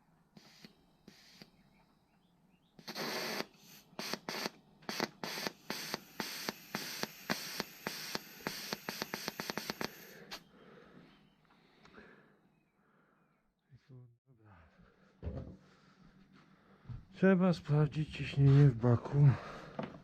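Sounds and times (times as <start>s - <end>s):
short hissing blasts: 0.4s - 1.5s, 2.8s - 10.5s.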